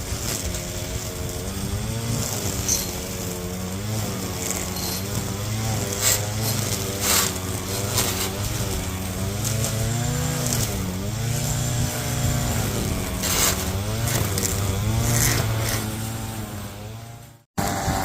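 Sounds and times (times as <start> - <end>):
lawn mower engine running: 0.0 - 18.0.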